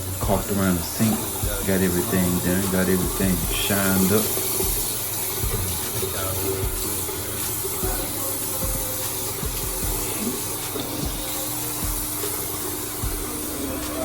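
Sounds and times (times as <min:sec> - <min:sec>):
faucet water running into sink: 0:00.0 - 0:14.0
music with thumping bass beat: 0:00.0 - 0:14.0.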